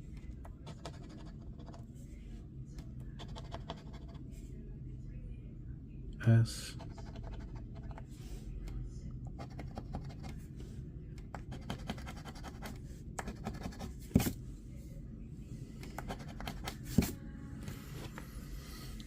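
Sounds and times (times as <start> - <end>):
scratching lottery ticket coating: 11.4 - 14.0.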